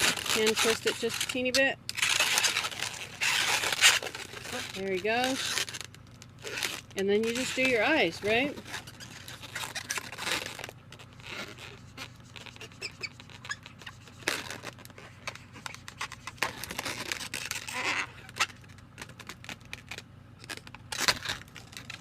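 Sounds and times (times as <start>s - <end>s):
balloon squeaks: 0.0s - 22.0s
balloons rubbing and clicking: 0.0s - 22.0s.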